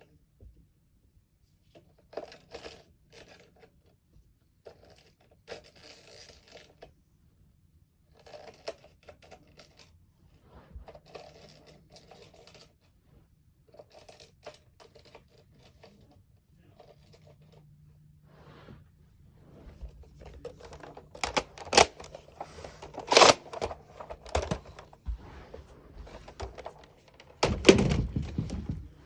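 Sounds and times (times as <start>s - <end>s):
foam darts scraping and clicking: 20.2s - 27.5s.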